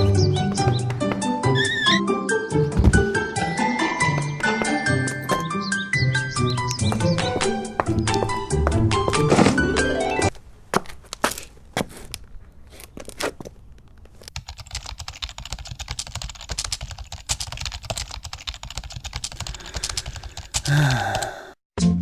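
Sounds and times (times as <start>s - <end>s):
typing on computer keyboard: 14.4s - 21.2s.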